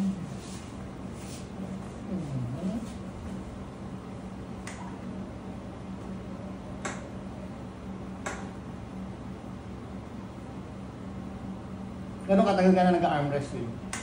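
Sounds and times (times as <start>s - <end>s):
steady low hum: 0.0s - 14.0s
sharp clicks: 8.2s - 8.5s.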